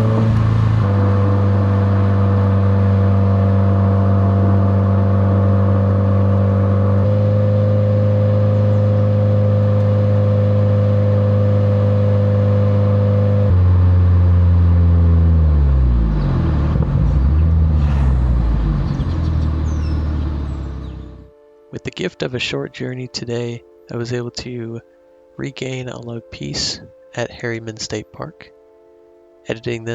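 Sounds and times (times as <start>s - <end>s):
car engine droning: 0.0s - 21.6s.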